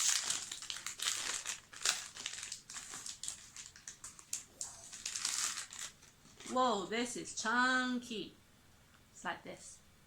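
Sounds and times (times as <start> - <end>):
snack wrapper crinkling: 0.0 - 6.5.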